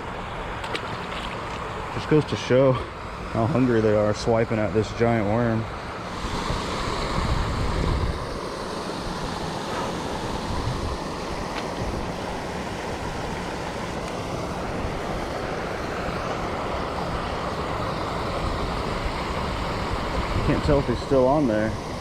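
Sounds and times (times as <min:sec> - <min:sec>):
creek water rushing: 0:00.0 - 0:22.0
wind on microphone: 0:06.1 - 0:22.0.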